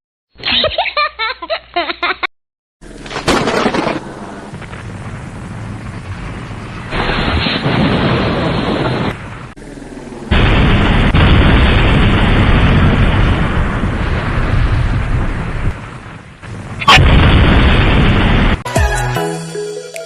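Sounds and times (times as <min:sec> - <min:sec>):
explosion-like rumbling: 0:03.1 - 0:18.6.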